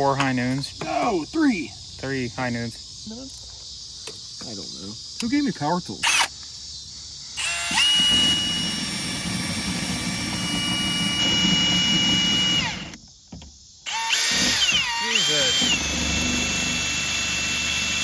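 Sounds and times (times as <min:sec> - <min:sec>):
cordless drill whining: 0:06.0 - 0:06.4, 0:07.4 - 0:13.0, 0:13.8 - 0:18.0.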